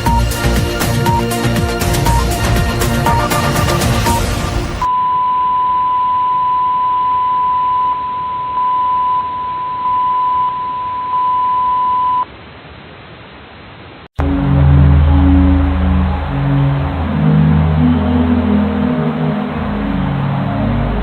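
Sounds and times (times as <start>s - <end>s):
electronic music: 0.0s - 4.9s, 14.2s - 21.0s
single-pitch test tone: 2.0s - 12.3s.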